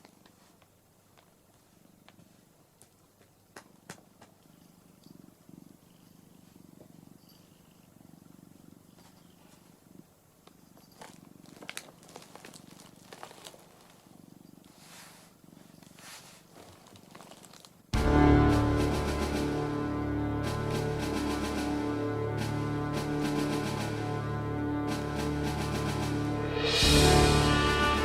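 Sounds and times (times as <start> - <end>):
soft rustles and clicks: 0.0 - 5.1, 8.8 - 17.9
cat purring: 0.0 - 28.0.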